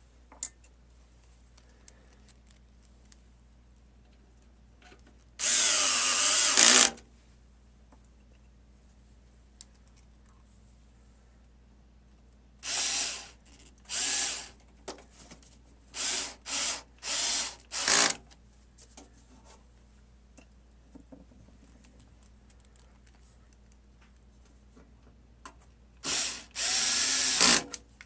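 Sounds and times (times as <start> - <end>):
power drill whirring: 5.4 - 7.0, 12.6 - 14.6, 16.0 - 18.2, 26.0 - 27.7.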